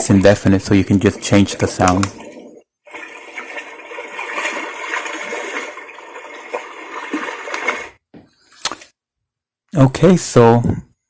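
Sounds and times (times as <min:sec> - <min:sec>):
running water through small speaker: 0:00.0 - 0:08.0
sharp click: 0:08.5 - 0:08.9.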